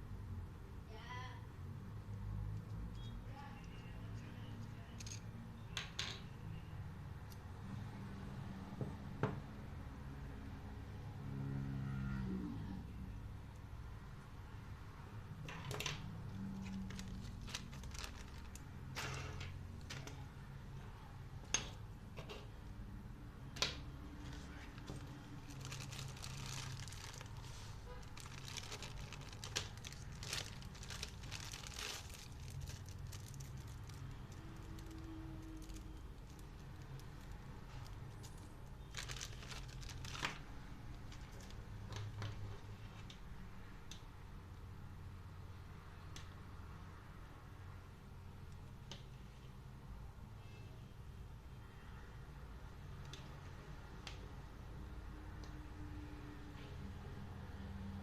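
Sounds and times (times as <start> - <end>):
small parts clicking: 3.6 - 6.2
plastic packaging crinkling: 16.6 - 18.6, 24.8 - 41.7.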